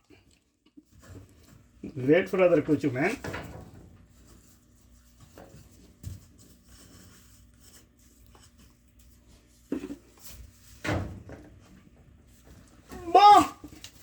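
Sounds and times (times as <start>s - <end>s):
faint rubbing and scraping: 0.8s - 10.8s.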